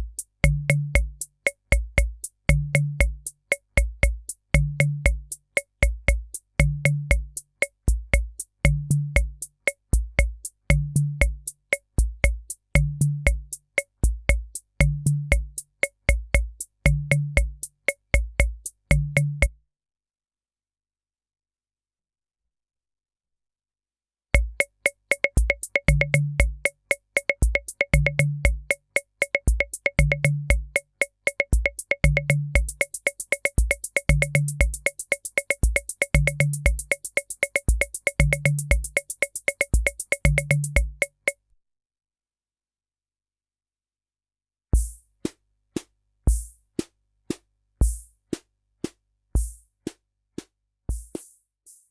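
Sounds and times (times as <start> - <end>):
drum machine clicks: 0.0 - 19.5, 24.4 - 41.4, 44.8 - 51.9
drum machine low thumps: 0.0 - 19.5, 24.4 - 41.4, 44.8 - 51.8
fast high ticks: 24.4 - 41.4
higher drum: 44.8 - 46.6, 47.3 - 50.0, 50.9 - 51.4.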